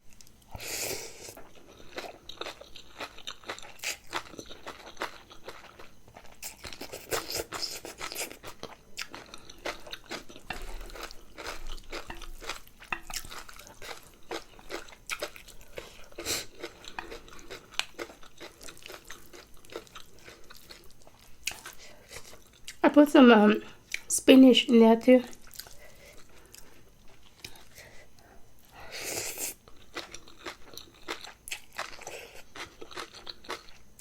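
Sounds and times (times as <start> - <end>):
crisp crunching and chewing: 1.3 - 22.8, 29.6 - 34.0.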